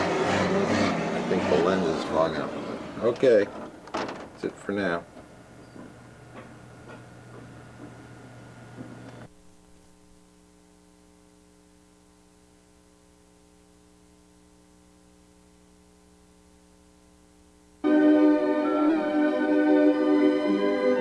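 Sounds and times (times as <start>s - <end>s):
electrical mains hum: 1.0s - 21.0s.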